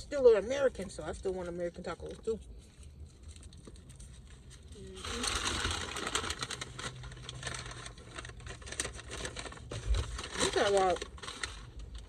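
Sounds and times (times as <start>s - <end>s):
food packaging crinkling: 2.9s - 12.0s.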